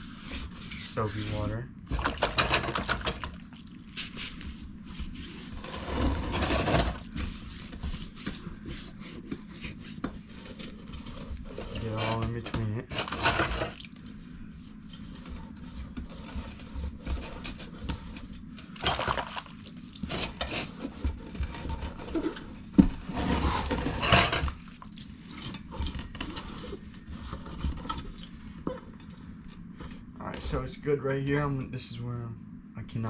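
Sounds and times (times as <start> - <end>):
hands rubbing a tire: 0.0 - 1.6, 3.3 - 12.4
scrubbing: 0.0 - 22.4.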